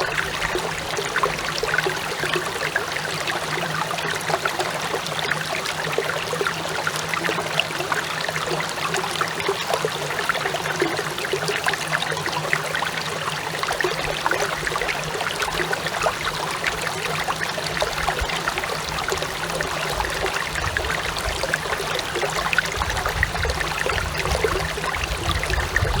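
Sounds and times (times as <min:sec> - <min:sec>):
stream babbling over rocks: 0:00.0 - 0:26.0.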